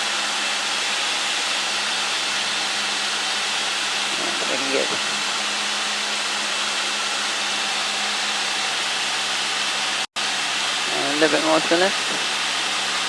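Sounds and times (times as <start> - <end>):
light aircraft engine drone: 0.0 - 13.0.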